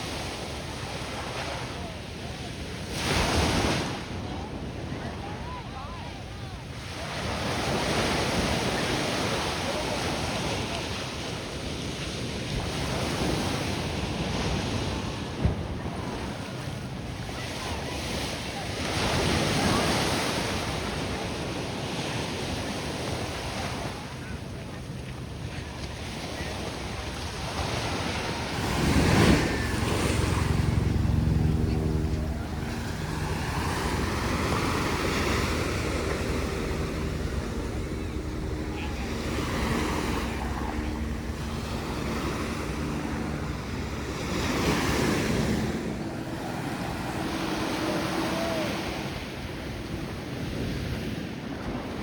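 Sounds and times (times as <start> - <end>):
ocean surf breaking on shore: 12.4 - 52.0.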